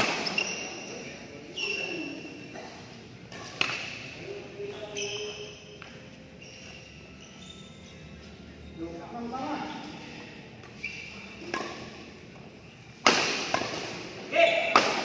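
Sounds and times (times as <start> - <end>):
short squeaks: 0.2 - 2.3, 4.7 - 5.8, 6.4 - 8.0, 10.7 - 11.4
racket striking shuttlecock: 3.3 - 4.0, 13.0 - 14.0, 14.7 - 15.0.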